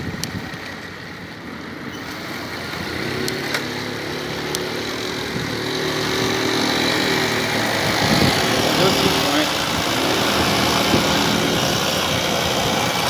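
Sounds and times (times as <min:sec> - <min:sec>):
wind noise: 0:00.0 - 0:00.9, 0:05.0 - 0:13.0
tyre noise: 0:02.8 - 0:13.0
electric motor hum: 0:04.0 - 0:13.0.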